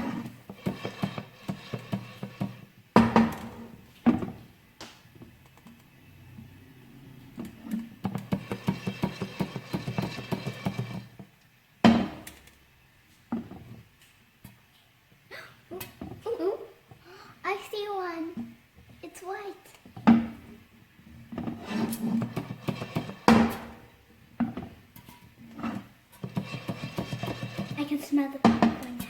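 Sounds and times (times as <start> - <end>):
popcorn popping in a pan: 0.0 - 5.7, 7.5 - 12.6, 21.3 - 29.0.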